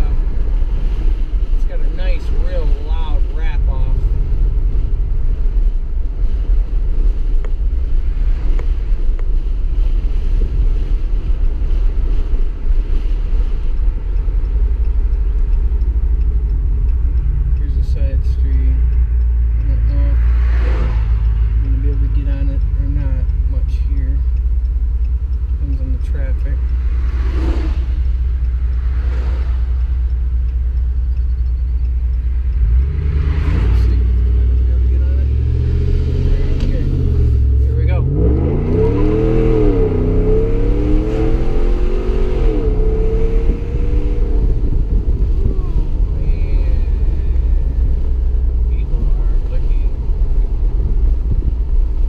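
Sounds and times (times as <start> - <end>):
deep exhaust rumble: 0.0 - 52.0
wind and road noise: 0.0 - 52.0.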